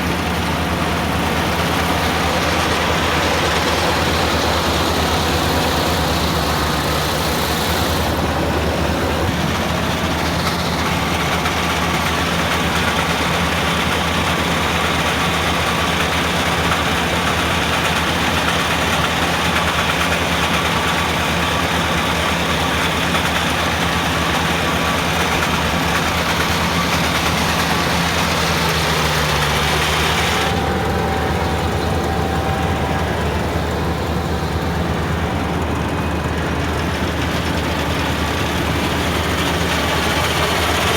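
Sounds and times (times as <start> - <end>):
heavy engine running: 0.0 - 40.9.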